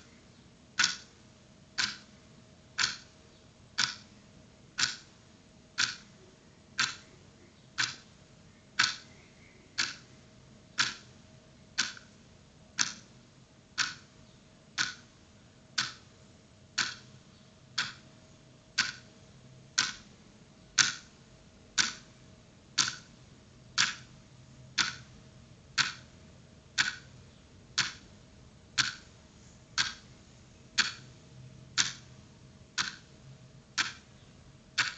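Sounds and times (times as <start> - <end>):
faint steady hum: 0.0 - 34.9
clock ticking: 0.7 - 1.2, 1.8 - 4.1, 4.7 - 6.2, 6.8 - 7.1, 7.8 - 8.1, 8.8 - 9.1, 9.8 - 10.1, 10.8 - 11.1, 11.8 - 12.2, 12.8 - 13.1, 13.7 - 14.1, 14.7 - 15.1, 15.7 - 16.1, 16.7 - 17.2, 17.8 - 18.1, 18.7 - 19.1, 19.7 - 20.1, 20.7 - 22.2, 22.8 - 24.2, 24.8 - 26.2, 26.8 - 27.2, 27.8 - 28.1, 28.7 - 29.2, 29.8 - 30.2, 30.8 - 31.2, 31.8 - 33.2, 33.8 - 34.1.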